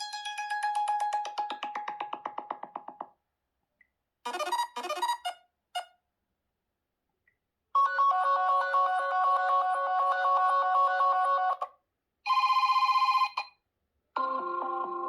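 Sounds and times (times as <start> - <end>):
melodic ringtone: 7.8 - 11.7, 14.2 - 15.0.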